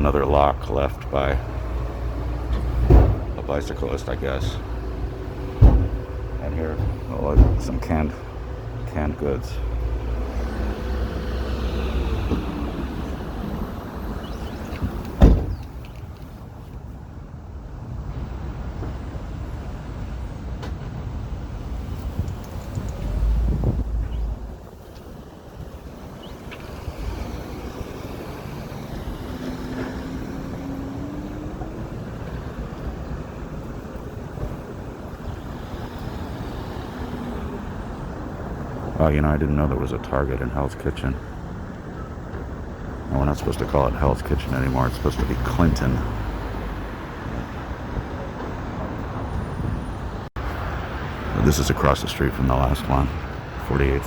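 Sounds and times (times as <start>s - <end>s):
vehicle engine rumble: 0.0s - 54.0s
loud thump: 2.8s - 3.4s, 5.5s - 6.1s, 6.7s - 7.8s, 14.8s - 15.7s
wind buffeting microphone: 19.8s - 39.0s.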